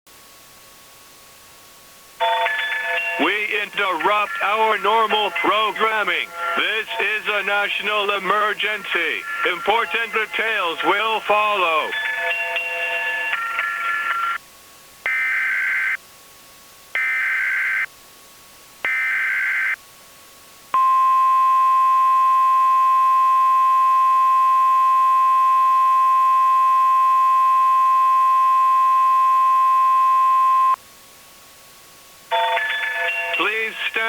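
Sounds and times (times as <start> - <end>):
steady attention tone: 2.2 - 13.3.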